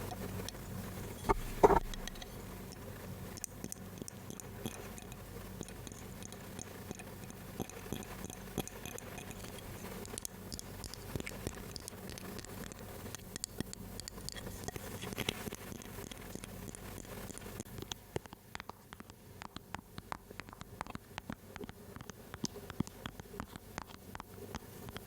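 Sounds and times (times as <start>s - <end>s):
soft clicks and taps: 1.2s - 2.8s.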